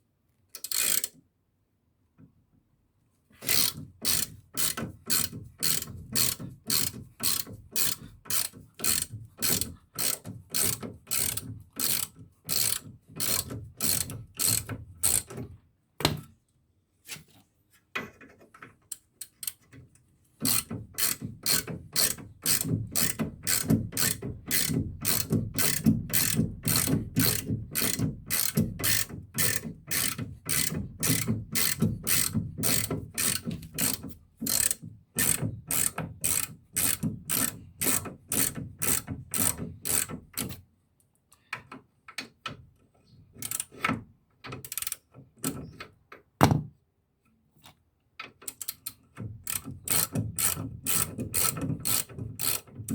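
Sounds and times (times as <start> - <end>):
ratchet wrench clicking: 0.6 - 1.2, 3.5 - 15.3, 20.4 - 40.5, 44.7 - 45.0, 48.5 - 52.7
knock: 46.4 - 46.8.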